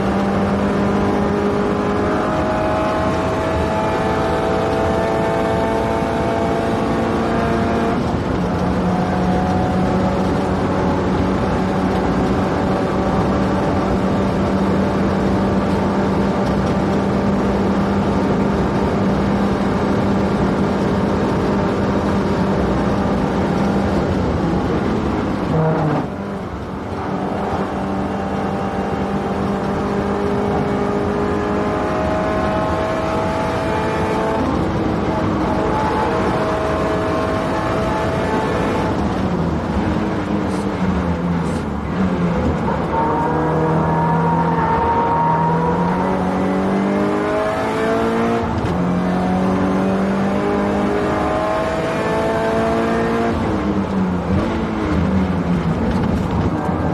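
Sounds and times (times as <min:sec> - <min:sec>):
car engine running hard: 0:00.0 - 0:56.9
tyre and wind noise: 0:44.5 - 0:56.9.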